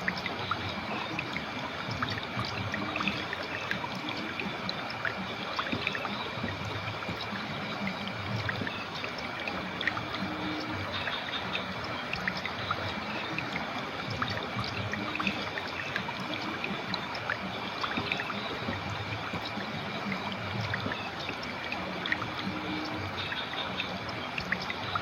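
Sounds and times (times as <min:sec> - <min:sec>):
river water flowing over stones: 0:00.0 - 0:25.0.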